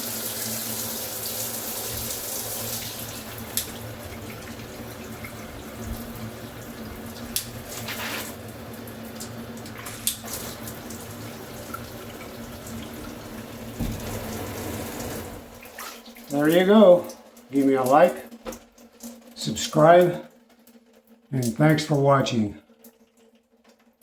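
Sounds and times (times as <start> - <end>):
shower head spraying water: 0.0 - 16.7.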